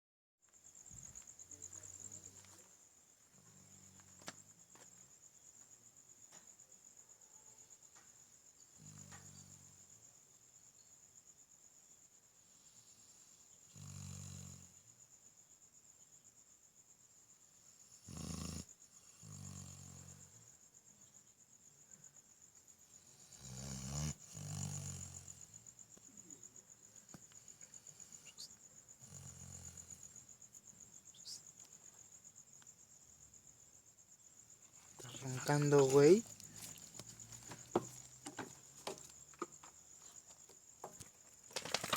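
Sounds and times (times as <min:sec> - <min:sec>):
crickets chirring: 0:00.4 - 0:41.9
dog snoring: 0:08.7 - 0:10.0, 0:12.6 - 0:14.9, 0:17.9 - 0:20.5, 0:23.0 - 0:25.8, 0:27.4 - 0:30.3.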